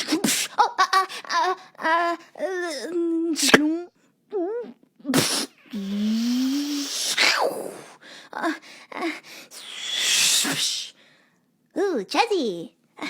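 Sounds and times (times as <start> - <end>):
person making mouth sound effects: 3.0 - 3.8, 4.6 - 7.8.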